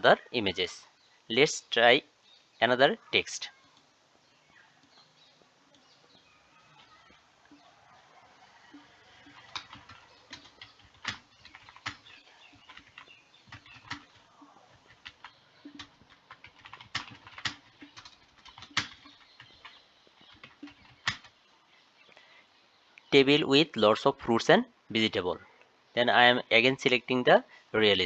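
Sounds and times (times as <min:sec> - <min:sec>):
typing on computer keyboard: 0:09.2 - 0:21.3.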